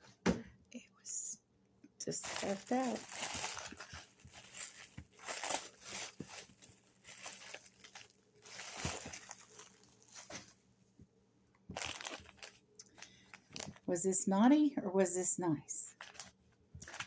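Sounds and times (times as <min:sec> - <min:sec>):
plastic packaging crinkling: 0:02.1 - 0:10.5, 0:11.7 - 0:13.9, 0:15.9 - 0:17.0.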